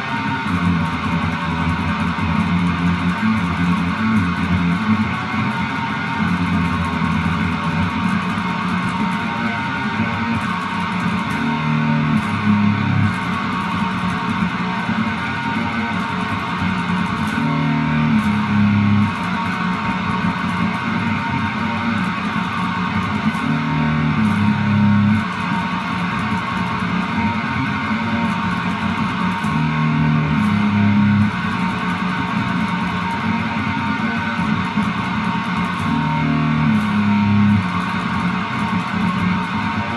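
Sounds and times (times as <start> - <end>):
electric guitar and bass music: 0.0 - 39.9.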